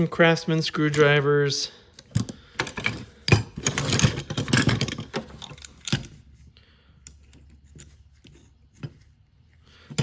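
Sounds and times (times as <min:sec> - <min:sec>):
hand tools clattering in toolbox: 0:02.1 - 0:06.0.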